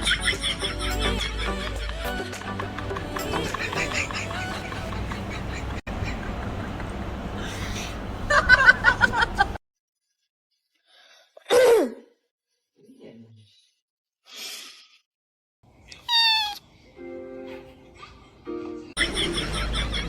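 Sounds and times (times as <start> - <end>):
background music: 0.0 - 5.5
falling animal call: 16.0 - 16.6
kitten mewing: 16.0 - 16.6.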